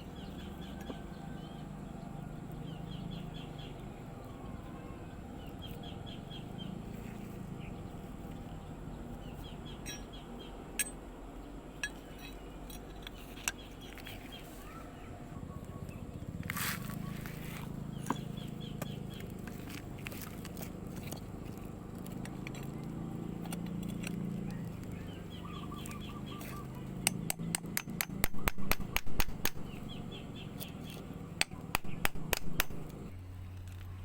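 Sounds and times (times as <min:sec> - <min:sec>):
steady low hum: 0:00.0 - 0:34.0
rapid sharp knocks: 0:27.0 - 0:29.8, 0:31.4 - 0:33.0.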